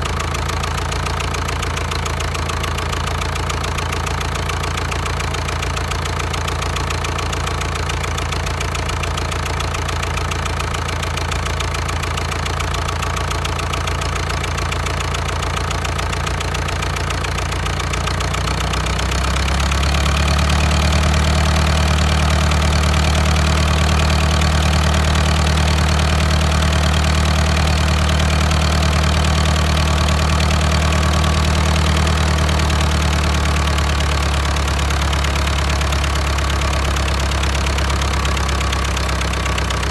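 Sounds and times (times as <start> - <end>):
diesel engine knocking: 0.0 - 39.9.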